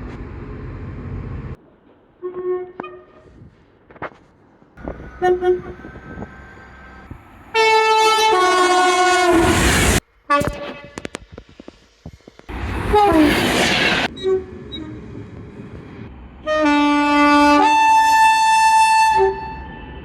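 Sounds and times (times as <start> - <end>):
train noise: 0.0 - 20.0
train horn blast: 2.2 - 3.3, 4.8 - 6.2, 7.5 - 11.1, 12.5 - 15.0, 16.4 - 20.0
brief horn toot: 5.1 - 6.2.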